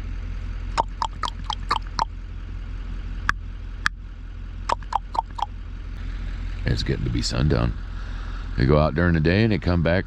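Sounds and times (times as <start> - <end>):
low hum: 0.6 - 8.6
ravens calling: 0.8 - 2.1, 4.7 - 5.5, 7.8 - 8.6.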